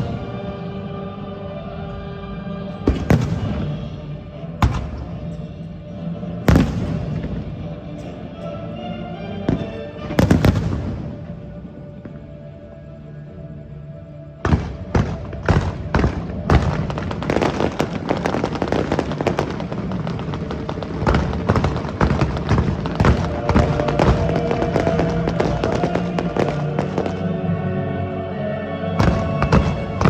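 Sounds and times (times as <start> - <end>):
fireworks bangs and crackle: 0.0 - 0.6, 2.8 - 5.6, 6.3 - 8.2, 9.5 - 12.2, 14.4 - 27.4, 29.0 - 30.0
show music: 0.0 - 30.0.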